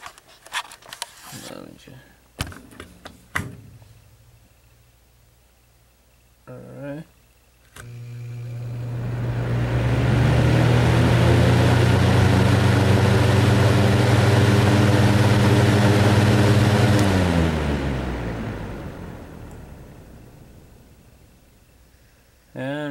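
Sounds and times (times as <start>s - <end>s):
fan motor hum: 7.6s - 22.9s
fan air rushing: 7.8s - 22.7s.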